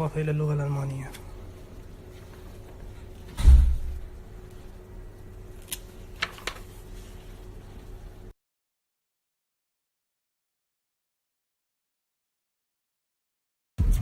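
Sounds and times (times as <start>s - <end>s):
heavy dull thump: 3.3s - 4.0s.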